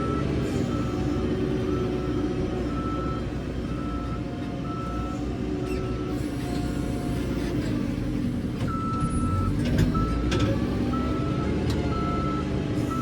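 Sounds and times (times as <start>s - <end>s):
reversing alarm beeping: 0.0s - 5.2s, 8.7s - 10.3s, 10.9s - 13.0s
diesel engine running: 0.0s - 13.0s.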